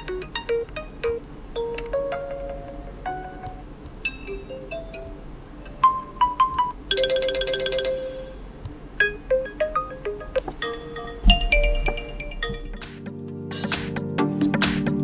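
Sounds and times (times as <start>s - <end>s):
phone alarm bell-like melody: 5.8s - 12.8s.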